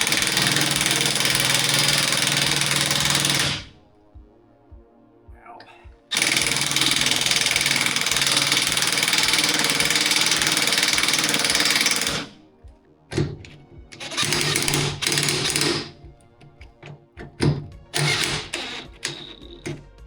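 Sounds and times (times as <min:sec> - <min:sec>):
impact wrench driving bolts: 0:00.0 - 0:03.7, 0:06.1 - 0:12.3, 0:13.1 - 0:16.0, 0:16.9 - 0:19.8.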